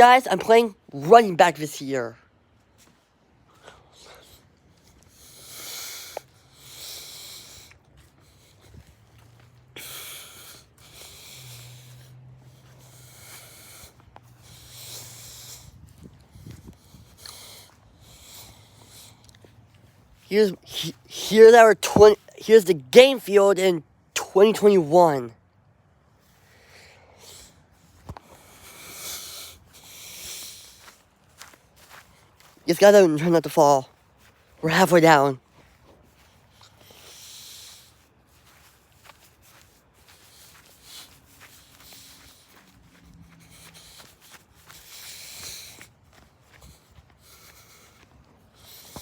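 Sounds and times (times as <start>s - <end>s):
person breathing heavily: 3.4s - 21.8s, 26.2s - 33.2s, 35.5s - 49.0s
person breathing: 9.8s - 15.8s, 26.2s - 32.6s, 46.5s - 49.0s.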